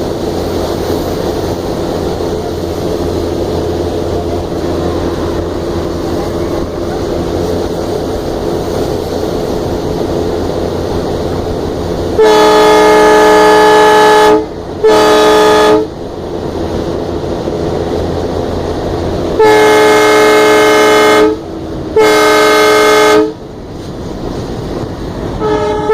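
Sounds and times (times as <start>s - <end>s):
diesel locomotive running: 0.0s - 25.9s
locomotive horn blasts: 12.2s - 15.9s, 19.4s - 23.4s, 25.3s - 25.9s.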